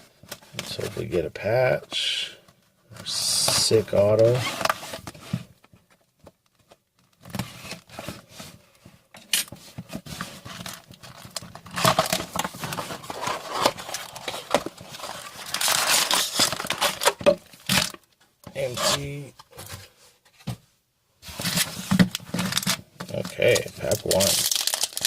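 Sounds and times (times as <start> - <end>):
packaging crinkling and rustling: 9.6 - 18.2, 21.3 - 25.0.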